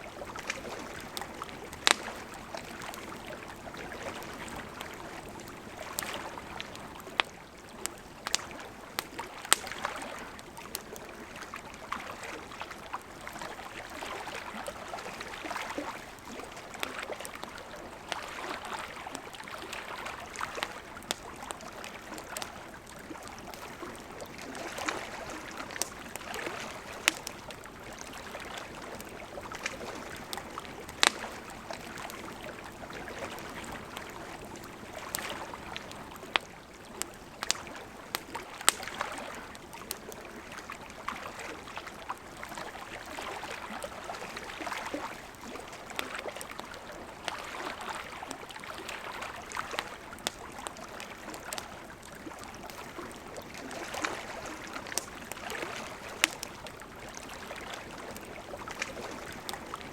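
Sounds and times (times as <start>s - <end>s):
lake water lapping: 0.0s - 59.9s
wood fire crackling and popping: 0.2s - 11.3s, 20.2s - 40.4s, 49.6s - 50.6s, 51.2s - 59.9s.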